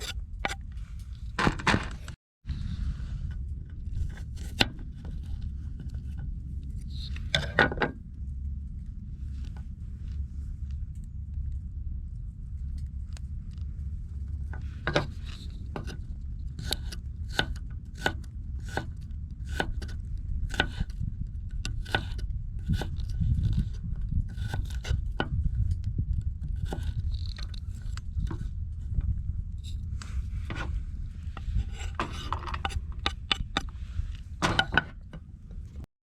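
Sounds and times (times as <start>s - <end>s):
steady low rumble: 0.0s - 35.9s
cutting or scraping strokes: 29.7s - 34.2s.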